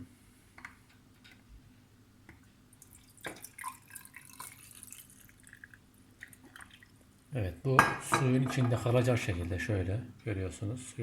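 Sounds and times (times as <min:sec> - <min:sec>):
water dripping in a jar: 0:02.8 - 0:07.0.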